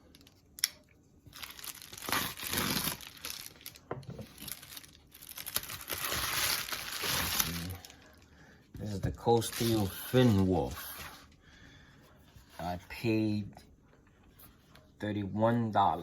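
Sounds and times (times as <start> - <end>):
packaging crinkling and tearing: 0.1 - 8.2, 9.3 - 11.0.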